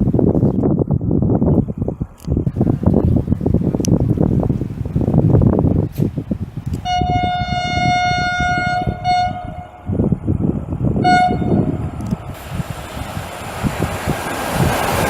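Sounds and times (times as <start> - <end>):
wind buffeting microphone: 0.0 - 15.0
locomotive horn blasts: 6.8 - 10.0, 11.0 - 12.0.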